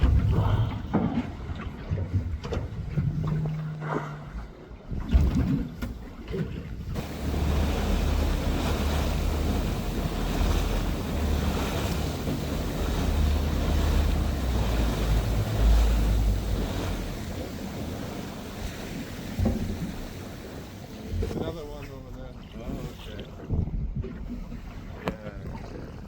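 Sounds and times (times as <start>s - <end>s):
sea water rushing around a boat: 0.0s - 26.0s
wind buffeting the microphone: 6.6s - 21.8s, 22.4s - 26.0s.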